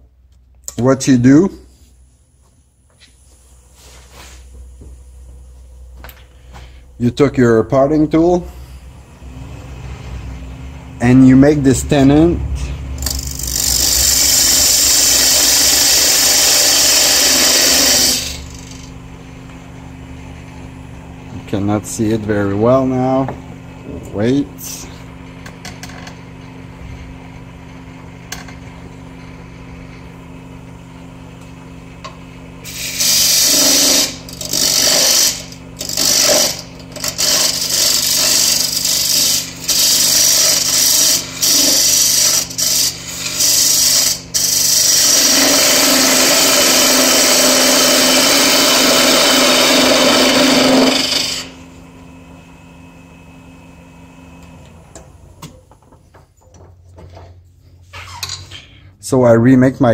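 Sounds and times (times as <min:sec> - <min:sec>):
wood lathe humming: 0:08.0 - 0:55.4
parting tool cutting wood: 0:13.0 - 0:19.0, 0:32.7 - 0:51.6.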